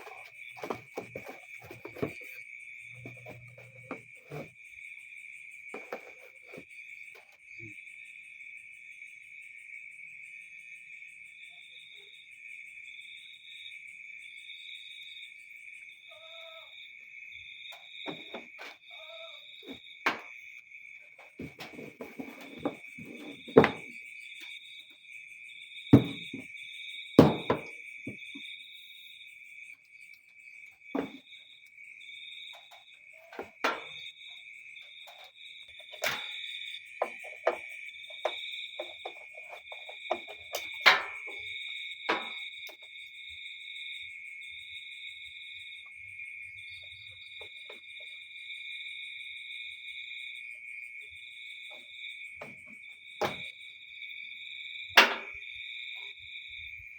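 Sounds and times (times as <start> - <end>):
crickets trilling: 0.0 - 56.9
sharp knocks and clicks: 26.0 - 26.4.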